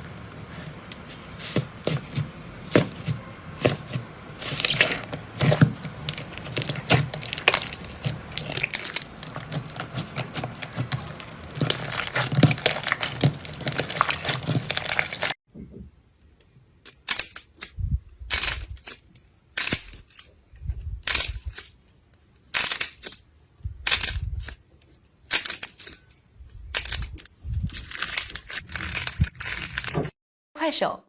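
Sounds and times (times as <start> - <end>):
slime squished by hand: 4.4 - 15.4.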